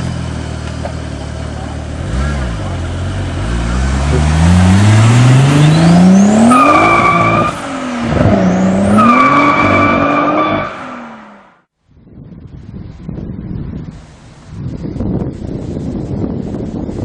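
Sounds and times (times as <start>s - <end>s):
car engine accelerating hard: 0.0s - 11.5s.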